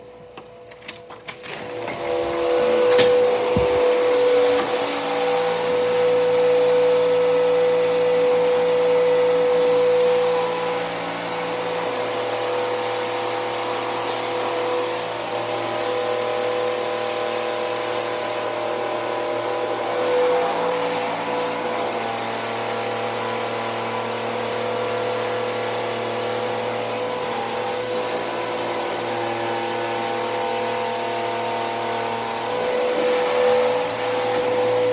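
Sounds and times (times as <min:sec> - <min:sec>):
vacuum cleaner motor whining: 0:00.0 - 0:34.9.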